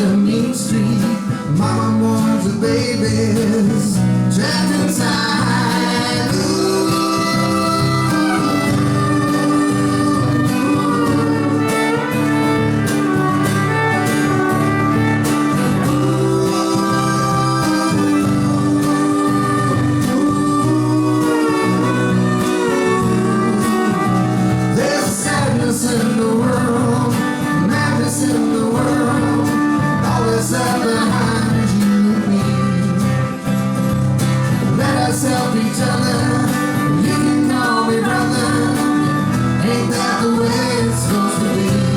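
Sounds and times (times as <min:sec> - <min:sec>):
acoustic guitar accompaniment: 0:00.0 - 0:41.9
fiddle playing sliding melody: 0:06.4 - 0:25.4.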